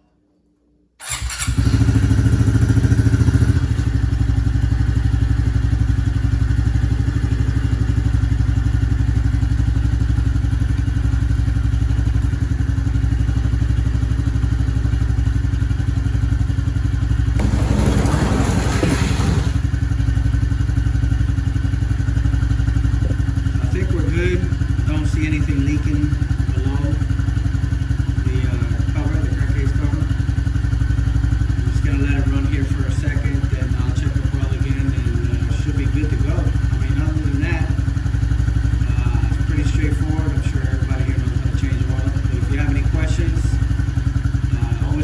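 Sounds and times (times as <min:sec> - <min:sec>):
small motorbike engine idling: 0:01.0 - 0:45.0
rustling: 0:17.4 - 0:19.8.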